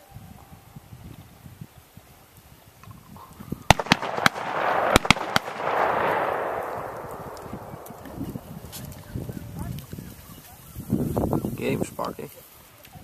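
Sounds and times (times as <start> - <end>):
rolling echo of gunshots: 3.7 - 8.8
shotgun shots: 3.7 - 8.8.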